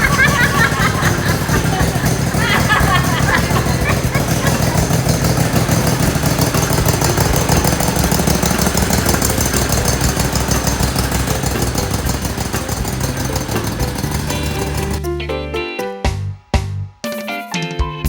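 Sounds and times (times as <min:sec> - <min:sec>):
music: 0:00.0 - 0:04.9, 0:09.0 - 0:18.0
riding lawnmower engine running: 0:00.0 - 0:15.3.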